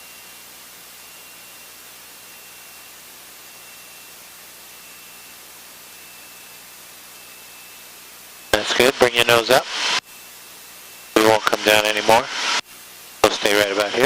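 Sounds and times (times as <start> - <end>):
steady electronic hiss: 0.0 - 14.0.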